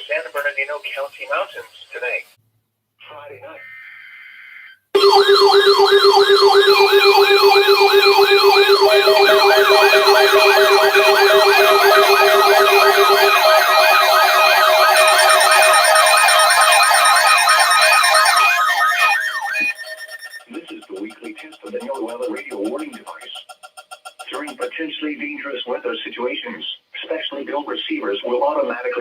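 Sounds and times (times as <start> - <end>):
electronic siren alert tones: 5.0 - 20.6.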